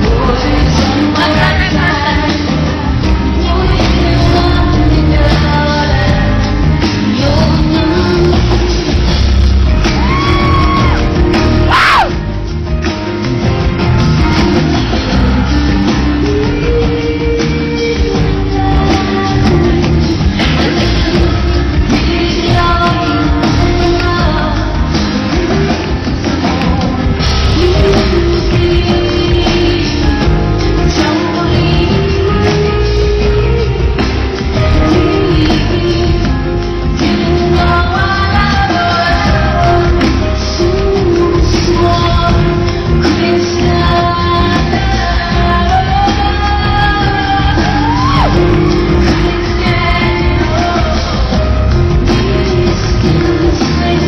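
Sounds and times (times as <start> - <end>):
live rock band: 0.0 - 54.0
woman singing: 0.0 - 54.0.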